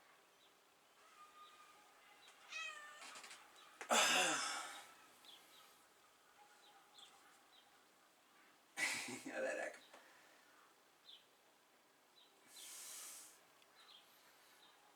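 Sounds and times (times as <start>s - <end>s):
cat meowing: 2.4s - 3.2s.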